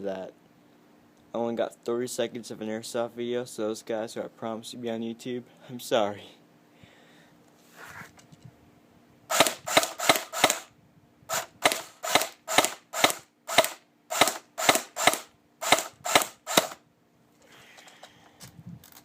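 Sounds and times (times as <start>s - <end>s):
suppressed airsoft rifle shots: 9.3s - 10.7s.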